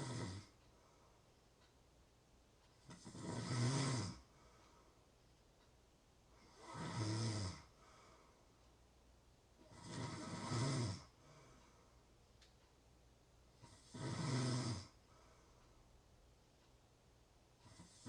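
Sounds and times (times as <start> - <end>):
person snoring: 0.0 - 0.5, 2.8 - 4.3, 6.4 - 7.7, 9.7 - 11.4, 13.6 - 15.0, 17.6 - 18.0.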